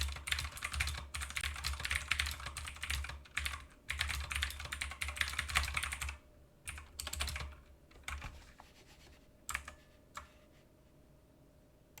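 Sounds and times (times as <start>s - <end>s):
clicky mechanical keyboard typing: 0.0s - 8.4s, 9.5s - 10.3s.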